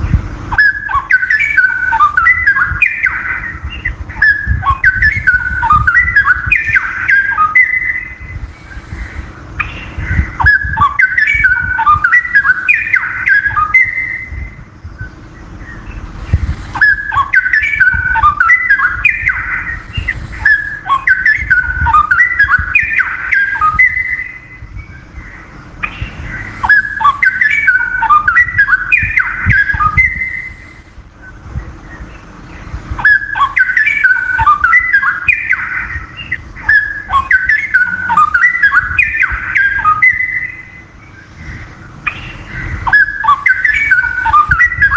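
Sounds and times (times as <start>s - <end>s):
bird singing whistled phrases: 0.5s - 44.9s.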